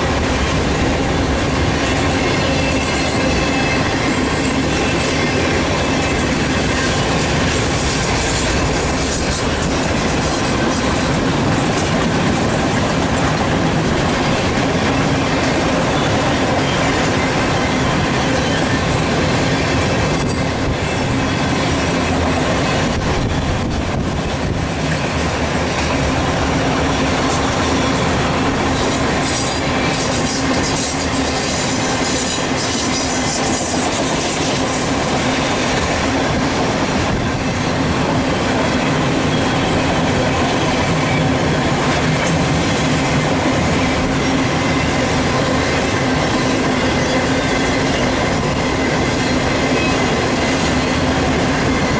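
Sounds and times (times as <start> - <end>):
freight train wheels rumbling: 0.0 - 51.9
wheels clacking over rail joints: 0.0 - 51.9
high wheel squeal: 1.8 - 11.1, 14.9 - 21.5, 27.2 - 35.8, 38.6 - 42.3, 43.8 - 51.9.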